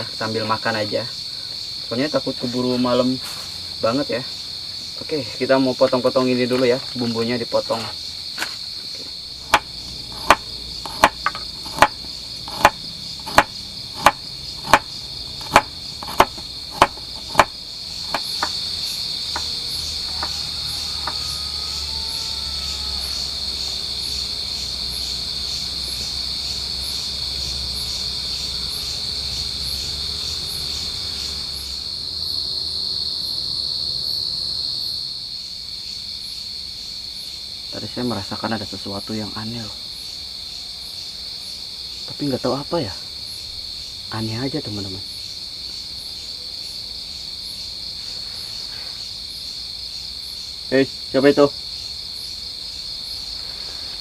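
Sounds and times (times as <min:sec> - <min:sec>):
crickets chirring: 0:00.0 - 0:54.0
knife chopping on cutting board: 0:09.5 - 0:17.5.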